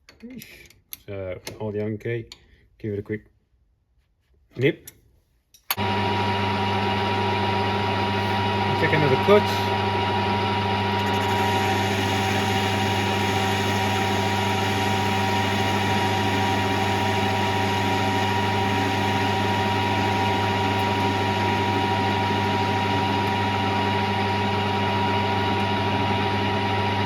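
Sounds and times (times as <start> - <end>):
metal lathe humming: 5.8 - 27.0.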